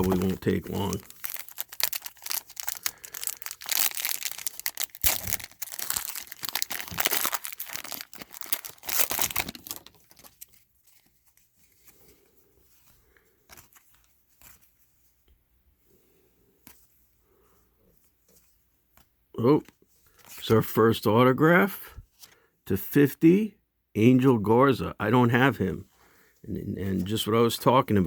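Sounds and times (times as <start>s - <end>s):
wrapper tearing and crinkling: 0.0s - 11.1s
cards being handled: 0.0s - 15.2s.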